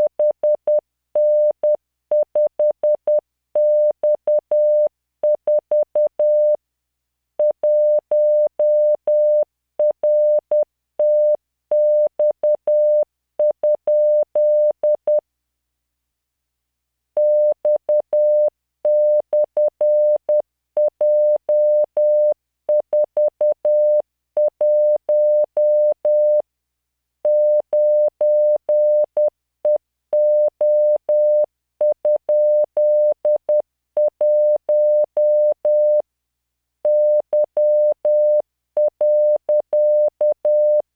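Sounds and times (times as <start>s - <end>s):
morse code tone: 36.9s - 40.9s.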